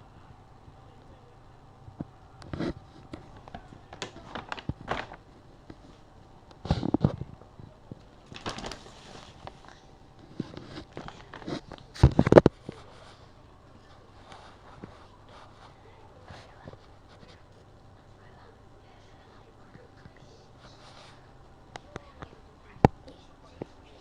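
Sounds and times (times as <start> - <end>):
packaging crackling and rustling: 2.5 - 13.2.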